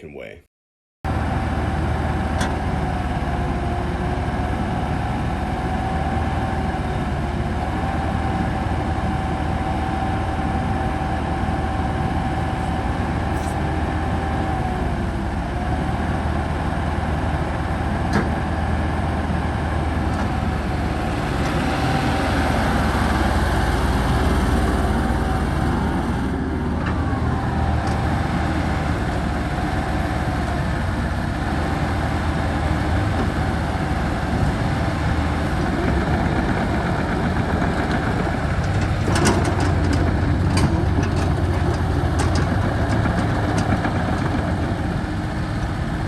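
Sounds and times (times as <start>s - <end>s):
excavator diesel engine running: 1.1s - 46.0s.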